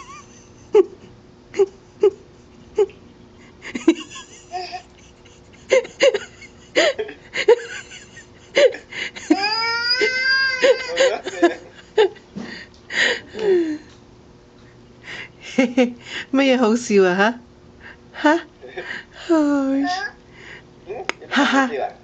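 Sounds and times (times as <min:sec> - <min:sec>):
baby whining cry: 0:09.3 - 0:11.2.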